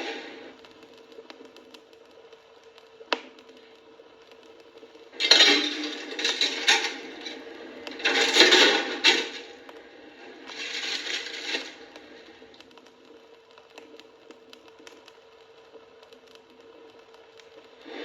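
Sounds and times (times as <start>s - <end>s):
faint steady hum: 0.0s - 18.0s
coin machine mechanism clattering: 5.2s - 7.4s.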